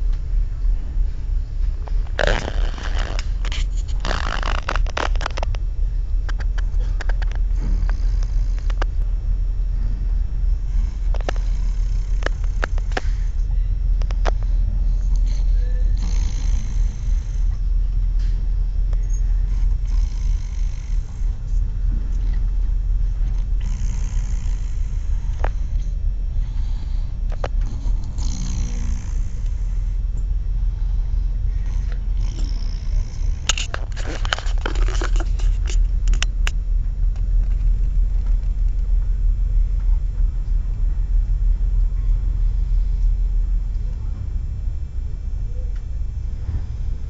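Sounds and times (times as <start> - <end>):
steady low rumble: 0.0 - 47.0
person snoring: 2.1 - 5.4, 7.5 - 8.8, 10.6 - 13.4, 14.4 - 17.5, 19.4 - 21.3, 23.5 - 30.0, 30.8 - 33.5.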